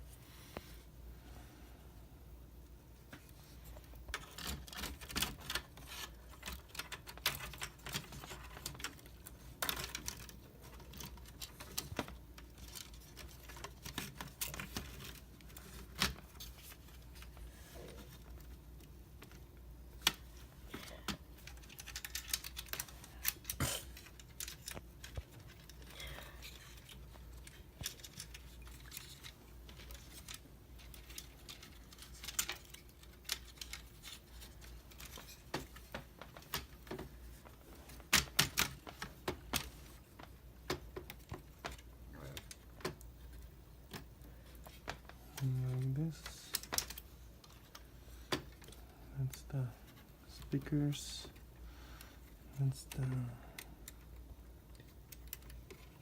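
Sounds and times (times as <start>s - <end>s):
laptop parts clicking: 4.1s - 17.4s, 20.0s - 37.1s, 37.9s - 45.5s, 52.9s - 56.0s.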